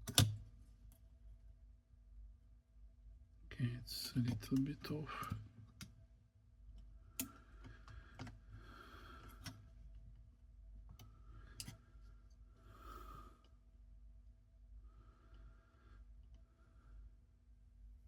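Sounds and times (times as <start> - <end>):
soft breaths: 7.0 - 10.0, 11.0 - 13.8, 14.7 - 17.5.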